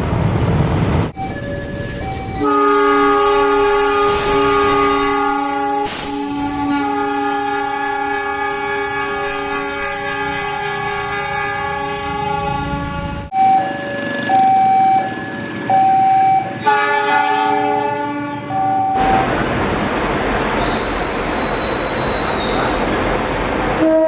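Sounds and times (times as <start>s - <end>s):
locomotive horn blast: 2.3s - 13.6s, 15.9s - 19.4s, 23.8s - 24.0s.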